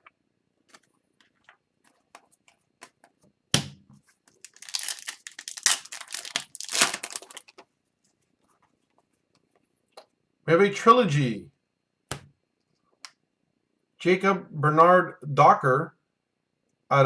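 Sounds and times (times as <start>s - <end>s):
foil wrapper crinkling and tearing: 4.3s - 7.6s.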